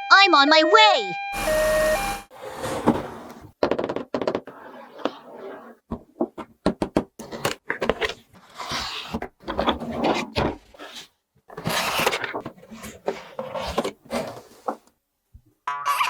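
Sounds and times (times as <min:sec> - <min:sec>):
toys scraping or rustling: 0:01.4 - 0:03.6, 0:04.3 - 0:05.9.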